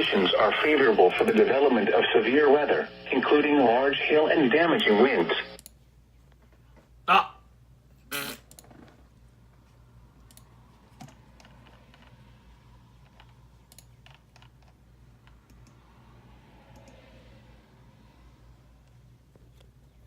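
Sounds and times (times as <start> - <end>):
low electrical hum: 0.0 - 20.0
computer keyboard typing: 10.2 - 12.2, 13.0 - 15.8.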